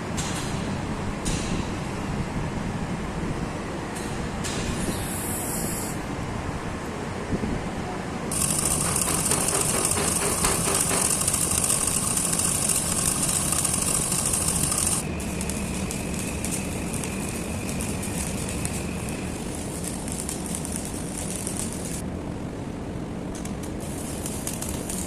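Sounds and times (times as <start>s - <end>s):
arc welding sizzling and crackling: 8.3s - 22.0s, 23.3s - 25.0s
engine running: 8.3s - 22.0s.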